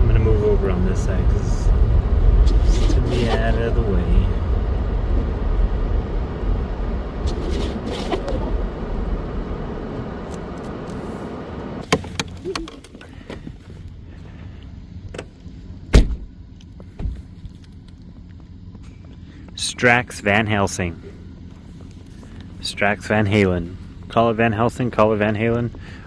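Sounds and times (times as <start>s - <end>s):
truck engine and road rumble: 0.0s - 26.0s
vehicle door shutting: 7.2s - 8.6s, 11.8s - 13.6s, 15.1s - 17.3s.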